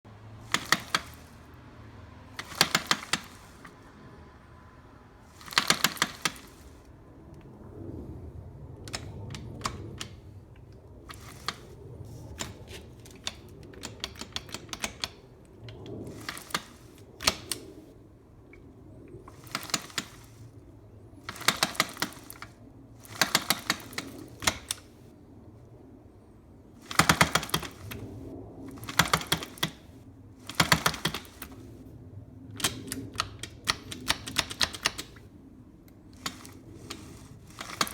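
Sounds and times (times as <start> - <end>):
engine gearbox clicking and clunking: 0.4 - 1.5, 2.3 - 3.9, 5.3 - 6.9, 21.2 - 24.9, 28.8 - 31.6, 36.1 - 37.9.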